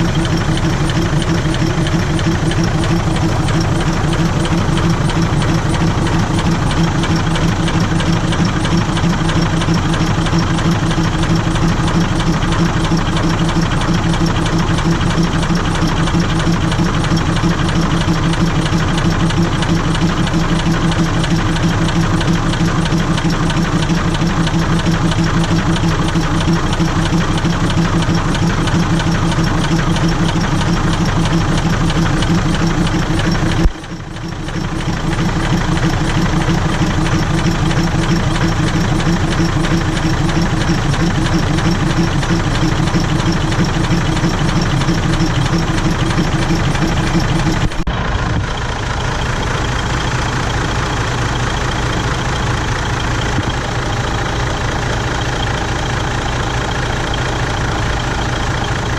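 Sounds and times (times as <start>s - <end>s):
air compressor chugging: 0.0s - 58.9s.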